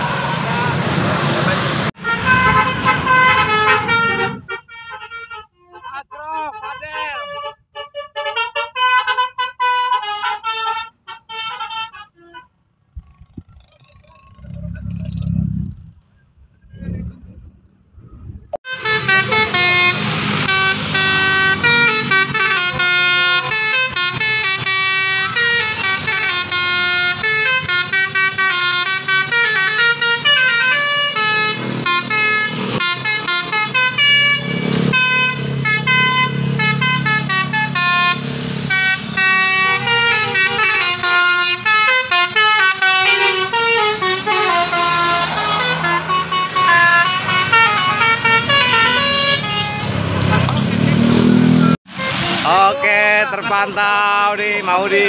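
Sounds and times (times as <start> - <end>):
multi-tone air horn melody: 1.9 - 12.6, 18.6 - 50.1, 51.9 - 53.6.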